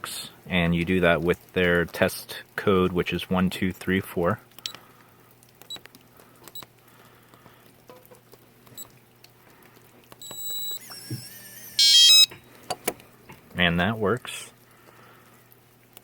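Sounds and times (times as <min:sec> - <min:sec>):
lock motor buzz: 0:10.2 - 0:12.4
keypad beeps: 0:10.2 - 0:12.5.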